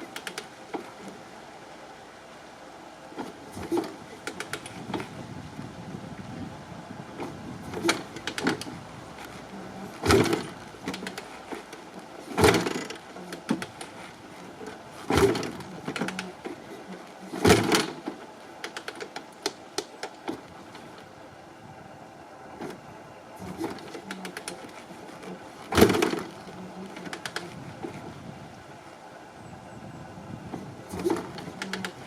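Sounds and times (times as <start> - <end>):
two-stroke engine rough idle: 7.2 - 18.1.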